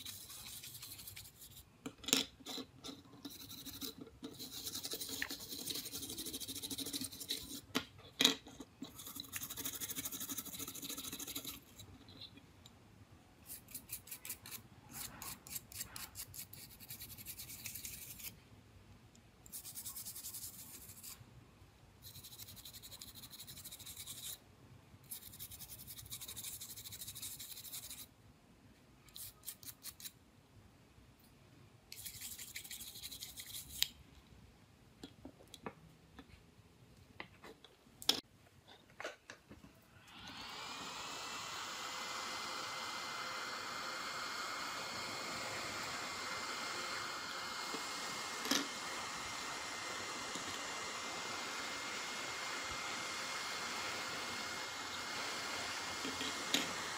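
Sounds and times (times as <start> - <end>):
scraping and brushing on phone parts: 0.0 - 7.8, 8.4 - 12.4, 13.4 - 18.4, 19.5 - 21.2, 22.0 - 24.4, 25.0 - 28.1, 29.1 - 30.2, 31.9 - 34.0.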